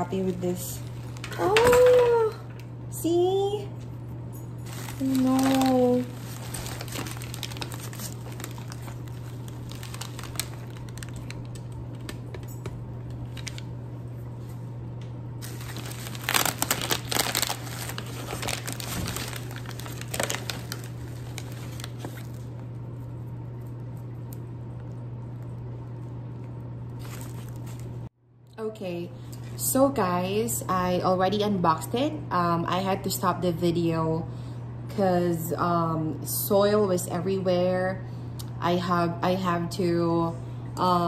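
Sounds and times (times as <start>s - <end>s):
steady low hum: 0.0s - 41.0s
packaging crinkling and rustling: 4.6s - 13.7s, 15.4s - 22.7s, 26.9s - 28.0s.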